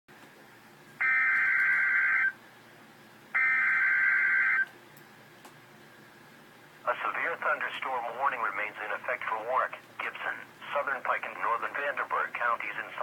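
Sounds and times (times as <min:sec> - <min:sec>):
buzzing electronic data tones: 0:01.0 - 0:02.4, 0:03.4 - 0:04.7
faint broadcast hiss: 0:04.4 - 0:13.0.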